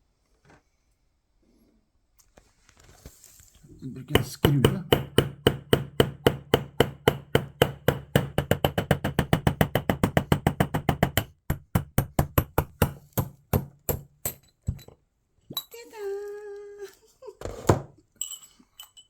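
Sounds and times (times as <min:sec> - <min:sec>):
hammer tapping screw on pot: 0:04.0 - 0:14.9.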